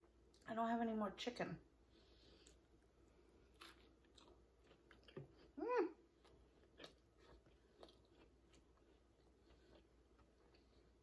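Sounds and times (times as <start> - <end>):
person chewing: 2.1 - 11.0
person humming: 5.6 - 6.0.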